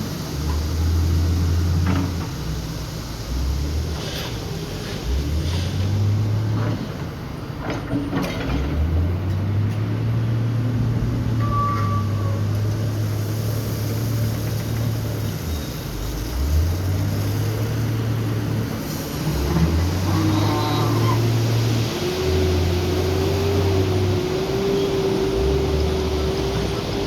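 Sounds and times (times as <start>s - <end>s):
diesel engine revving: 12.2s - 27.0s.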